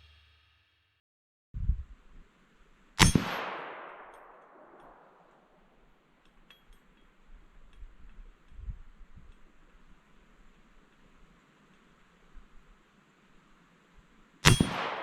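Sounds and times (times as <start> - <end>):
sharp metallic impact ringing: 3.0 - 5.0, 14.4 - 15.0
faint ticks: 6.2 - 12.5.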